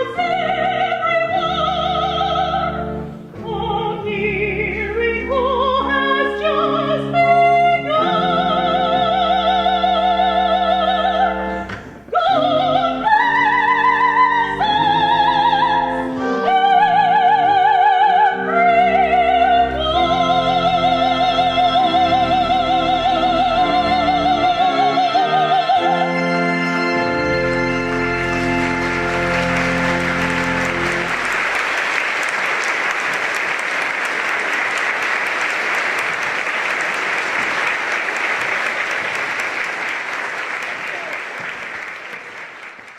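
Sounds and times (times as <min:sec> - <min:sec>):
operatic singing: 0:00.0 - 0:31.1
instrumental accompaniment: 0:00.0 - 0:33.4.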